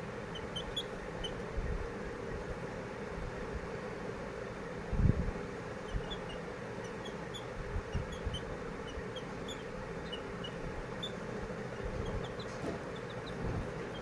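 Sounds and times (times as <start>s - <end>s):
birds chirping: 0.0s - 2.5s, 5.6s - 14.0s.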